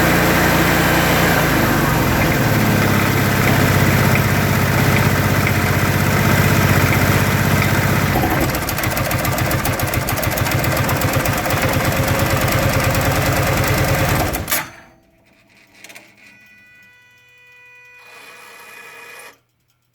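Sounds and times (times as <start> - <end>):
engine running with knocking pulse: 0.0 - 14.6.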